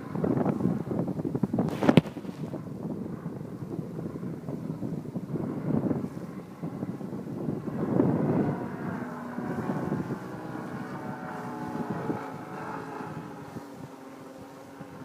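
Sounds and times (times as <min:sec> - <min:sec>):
model plane engine running: 0:00.0 - 0:15.0
wind buffeting microphone: 0:00.0 - 0:15.0.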